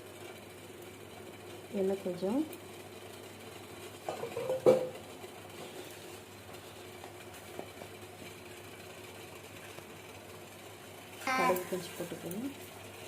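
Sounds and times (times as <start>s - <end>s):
short knocks on pan: 4.1s - 5.0s.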